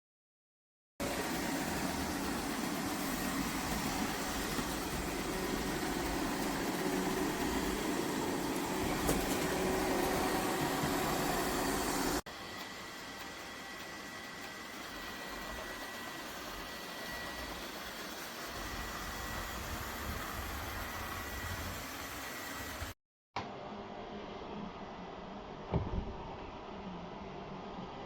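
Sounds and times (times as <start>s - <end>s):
robot vacuum whirring: 1.1s - 22.9s.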